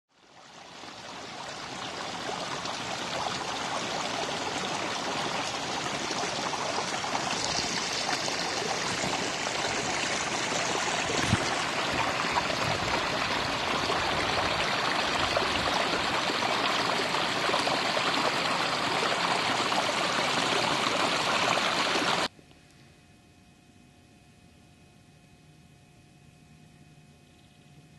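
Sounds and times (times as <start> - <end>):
stream water rushing: 0.4 - 22.3.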